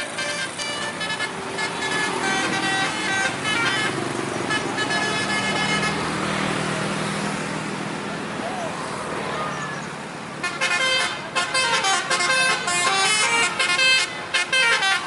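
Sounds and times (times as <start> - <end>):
bus horn playing musical notes: 0.0 - 6.2, 10.4 - 15.0
engine hum: 0.0 - 15.0
traffic noise: 0.0 - 15.0.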